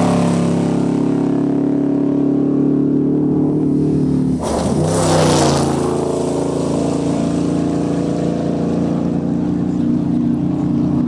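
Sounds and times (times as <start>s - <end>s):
truck engine running hard: 0.0s - 11.0s
loud rushing noise: 3.3s - 8.0s.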